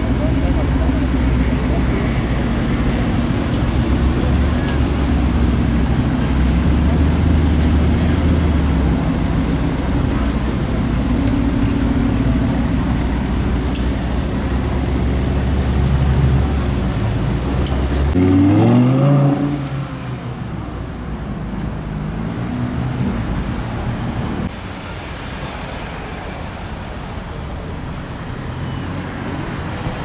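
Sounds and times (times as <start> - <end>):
car engines idling: 0.0 - 18.2, 19.6 - 30.0
engine revving: 14.5 - 20.0.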